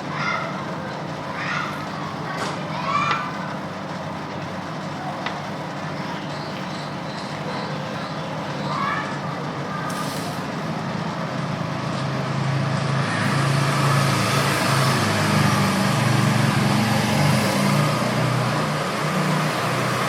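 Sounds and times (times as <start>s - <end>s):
hiss: 9.9s - 10.5s.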